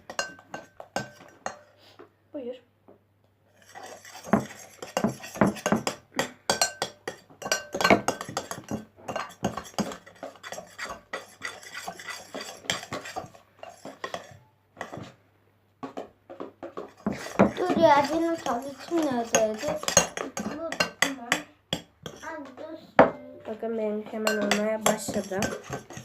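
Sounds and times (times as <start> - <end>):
utensil scraping bowl of slime: 3.5 - 6.0, 6.8 - 15.2, 16.6 - 22.6, 24.1 - 26.0
clinks against bowl: 24.2 - 26.0.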